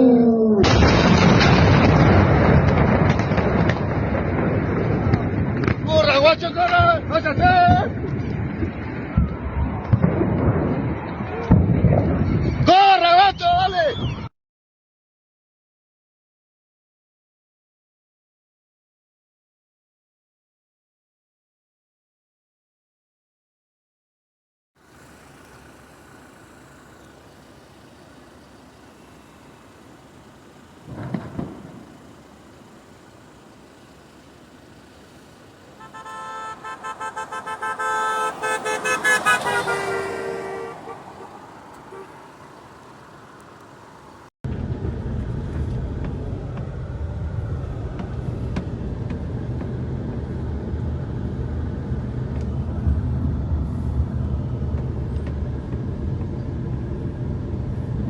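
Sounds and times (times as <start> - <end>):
low vehicle rumble: 0.0 - 12.7, 24.8 - 58.0
vehicle horn: 31.9 - 43.3.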